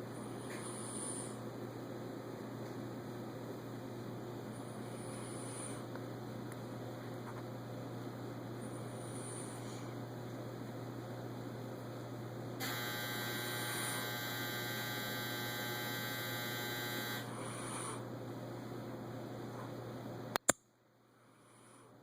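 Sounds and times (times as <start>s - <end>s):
steady low hum: 0.0s - 22.0s
alarm buzzing: 12.6s - 17.3s
sharp clicks: 20.4s - 20.7s.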